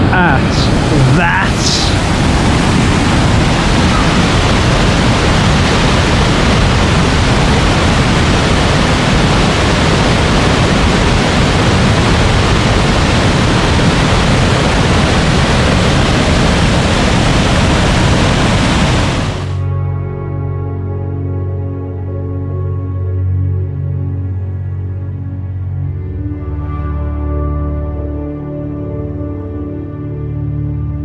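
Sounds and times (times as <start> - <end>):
waterfall rushing: 0.0 - 19.5.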